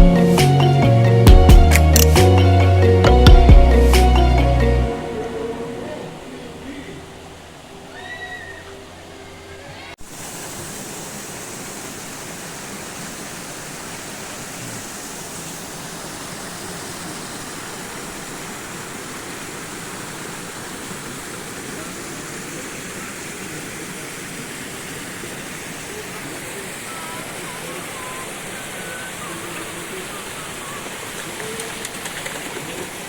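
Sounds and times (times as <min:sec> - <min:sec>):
background music: 0:00.0 - 0:07.9
river water rushing: 0:01.1 - 0:33.0.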